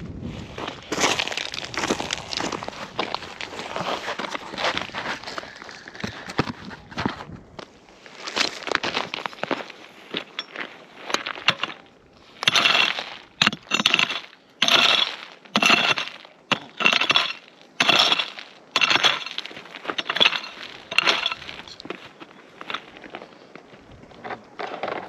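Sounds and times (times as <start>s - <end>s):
pick scraping gravelly ground: 0.0s - 25.0s
stones clinking: 10.1s - 23.1s.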